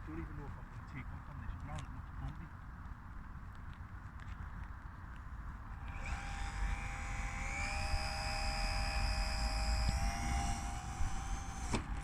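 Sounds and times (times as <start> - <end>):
model plane electric motor whining: 5.8 - 12.0.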